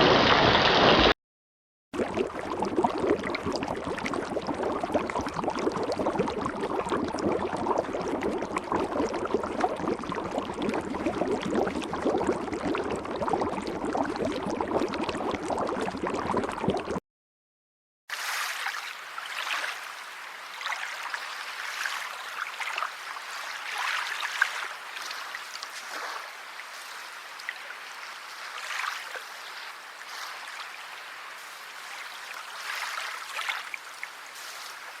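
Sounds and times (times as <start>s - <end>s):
stream water running: 18.1s - 35.0s.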